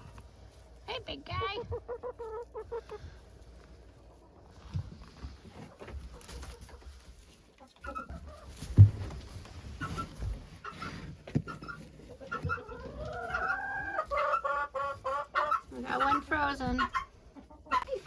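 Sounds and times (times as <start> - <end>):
chickens clucking: 0.0 - 18.0
dull knocks and thumps: 8.6 - 12.6.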